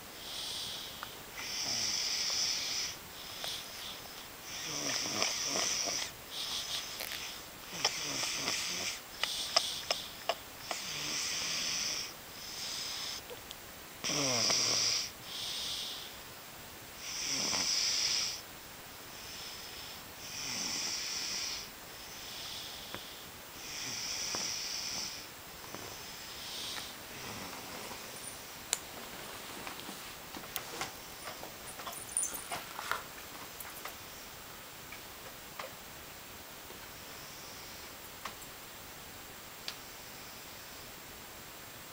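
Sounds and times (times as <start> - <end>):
heavy rasping snoring: 0.3 - 10.1, 10.7 - 13.2, 14.0 - 16.0, 17.0 - 18.4, 19.3 - 22.9, 23.6 - 25.3, 25.9 - 27.7.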